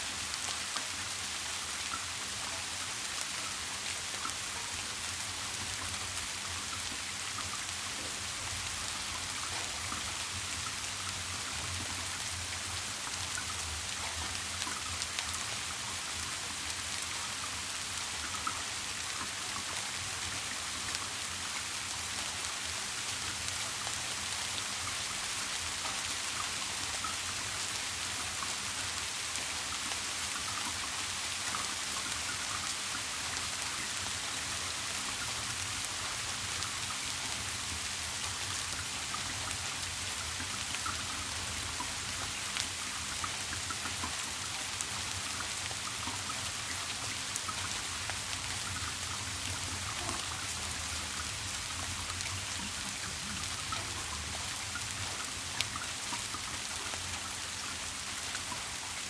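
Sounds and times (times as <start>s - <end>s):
individual raindrops: 0.0s - 59.0s
steady rain: 0.0s - 59.0s.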